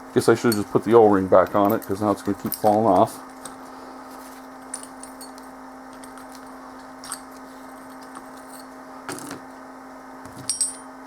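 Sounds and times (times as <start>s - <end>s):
steady hum: 0.0s - 11.0s
metal parts clicking and clinking: 0.4s - 3.6s, 4.7s - 9.4s, 10.3s - 10.9s.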